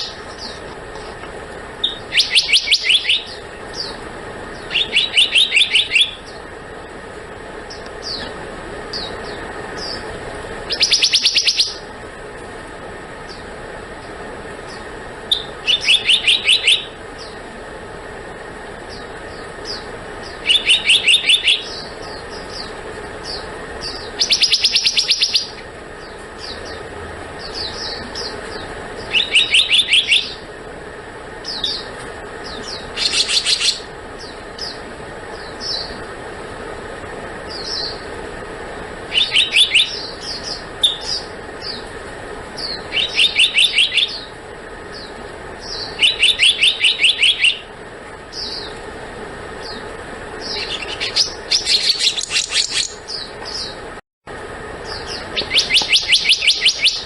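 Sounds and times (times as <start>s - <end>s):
low background hum: 0.0s - 57.0s
bird calling rapid high notes: 1.8s - 6.4s, 8.9s - 11.9s, 15.3s - 17.4s, 19.0s - 22.6s, 23.2s - 25.6s, 27.4s - 30.5s, 39.1s - 41.8s, 42.6s - 47.7s, 54.8s - 57.0s
single bird notes: 54.9s - 57.0s.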